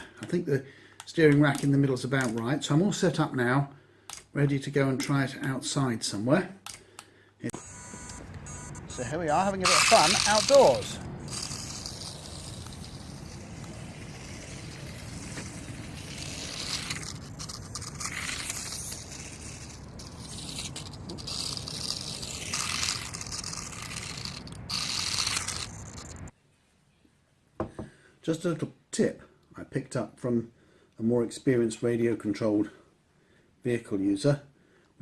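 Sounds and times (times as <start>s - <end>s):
electric motor whine: 7.6s - 26.2s
toy car tyres scraping: 7.6s - 26.3s.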